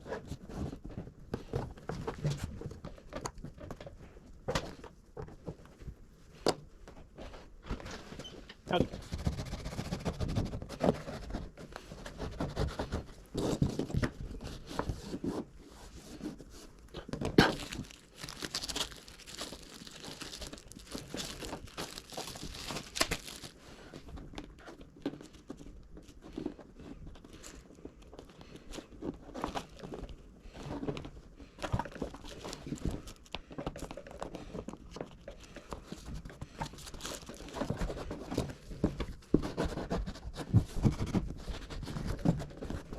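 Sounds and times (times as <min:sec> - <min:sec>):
paper and tape crinkling and tearing: 0:16.1 - 0:42.9.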